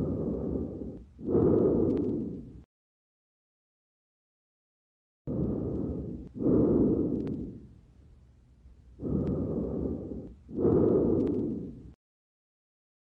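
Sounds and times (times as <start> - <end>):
lung breath sounds through stethoscope: 0.0 - 2.7, 5.3 - 7.8, 9.0 - 12.0.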